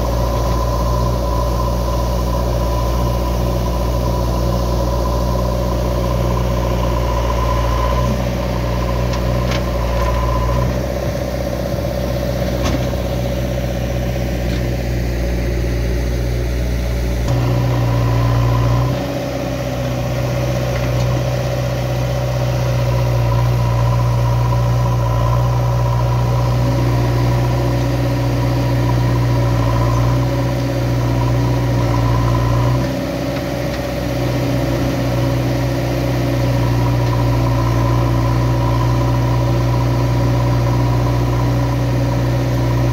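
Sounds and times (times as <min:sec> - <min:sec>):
steady high whine: 0:00.0 - 0:30.1
diesel engine working: 0:00.0 - 0:42.9.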